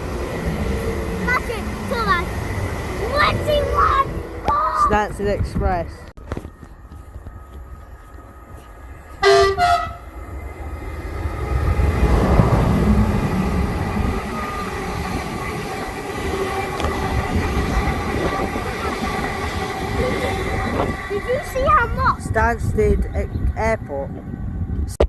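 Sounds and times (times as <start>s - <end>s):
train passing at speed: 0.0s - 24.9s
train horn blasts: 9.2s - 10.2s.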